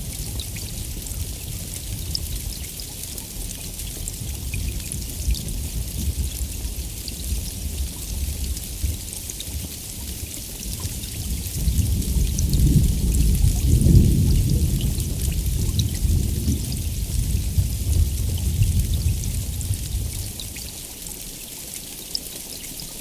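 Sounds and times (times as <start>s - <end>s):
heavy rain: 0.0s - 23.0s
thunder rumbling: 11.6s - 20.4s.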